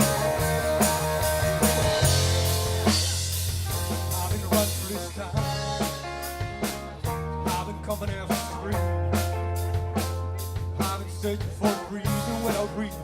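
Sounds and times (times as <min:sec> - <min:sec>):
bass and guitars: 0:00.0 - 0:13.0
drum kit beat: 0:00.0 - 0:13.0.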